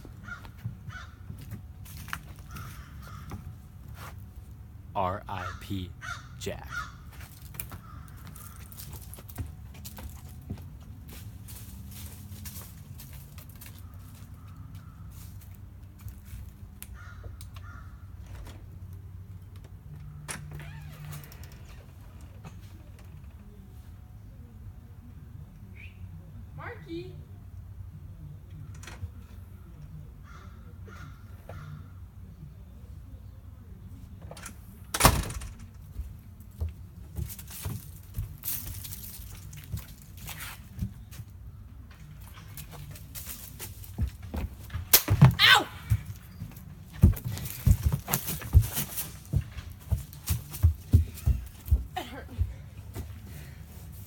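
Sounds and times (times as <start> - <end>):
harsh bird calls: 5.0 - 8.8.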